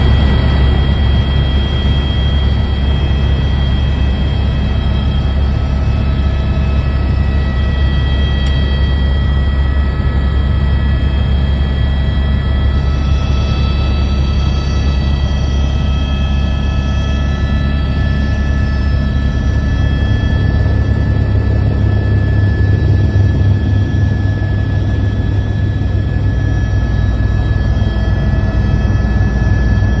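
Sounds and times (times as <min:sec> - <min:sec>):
helicopter rotor and engine drone: 0:00.0 - 0:30.0.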